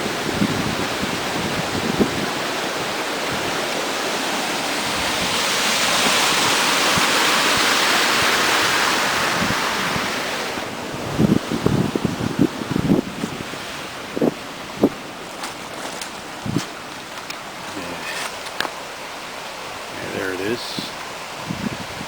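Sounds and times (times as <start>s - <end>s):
wind bumps on microphone: 0.0s - 3.6s, 4.8s - 17.8s, 21.4s - 22.0s
water rushing through dam outflow: 0.0s - 22.0s.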